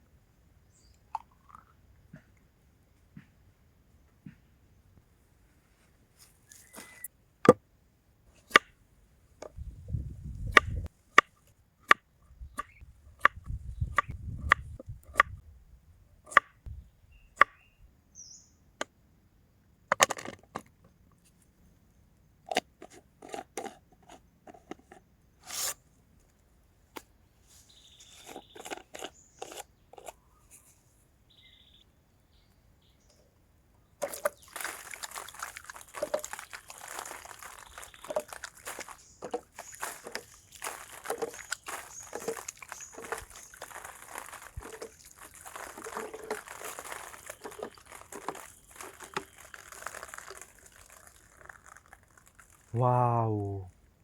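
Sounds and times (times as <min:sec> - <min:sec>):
rubbing and handling noise: 0:22.8 - 0:25.8, 0:27.4 - 0:30.9, 0:34.0 - 0:52.7
rustling and scraping: 0:22.8 - 0:25.8, 0:27.4 - 0:31.0, 0:34.0 - 0:52.7.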